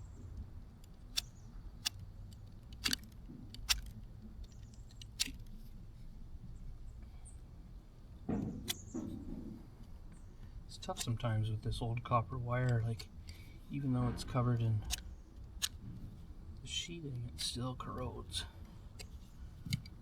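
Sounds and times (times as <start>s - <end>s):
dull handling noise: 0.0s - 20.0s
low steady rumble: 0.0s - 20.0s
hand tool clicking: 0.8s - 5.6s.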